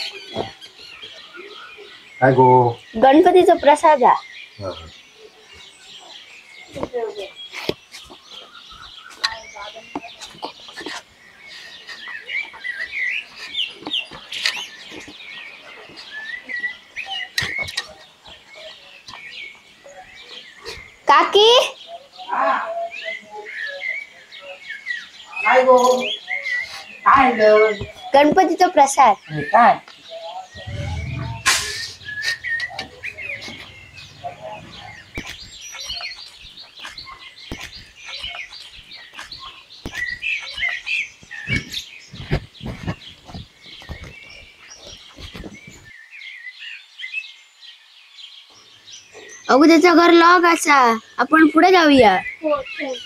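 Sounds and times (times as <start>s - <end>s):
small birds chirping: 0.0s - 53.0s
brief rush of noise: 30.6s - 35.0s.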